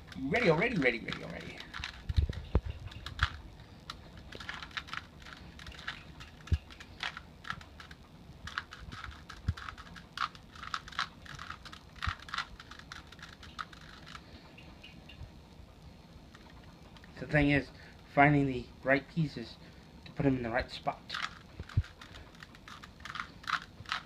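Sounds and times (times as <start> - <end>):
puzzle cube layers clacking: 0.0 - 14.2, 21.1 - 24.0.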